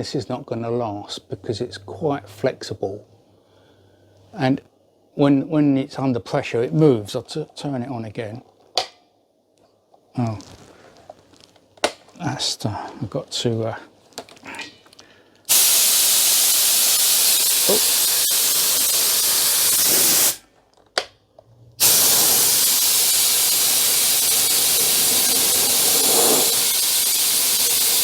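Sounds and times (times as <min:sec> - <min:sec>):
compressed air hissing: 0:15.5 - 0:20.4, 0:21.8 - 0:28.0.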